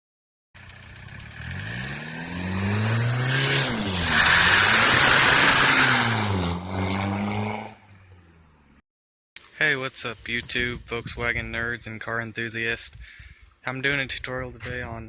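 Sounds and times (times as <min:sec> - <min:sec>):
car engine accelerating: 0:00.6 - 0:08.8.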